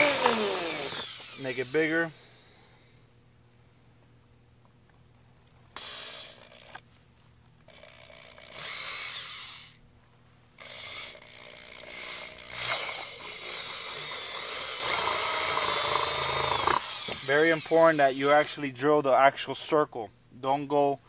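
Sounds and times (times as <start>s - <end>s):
power drill drilling into plastic: 0.0s - 2.0s, 5.8s - 6.7s, 8.2s - 9.8s, 10.6s - 18.6s.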